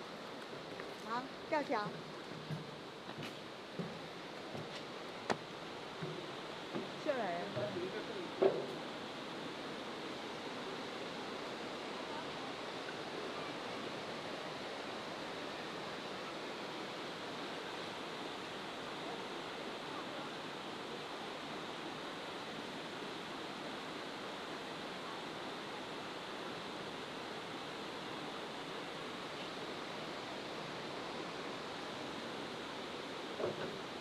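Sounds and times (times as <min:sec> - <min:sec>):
waterfall and river rushing: 0:00.0 - 0:34.0.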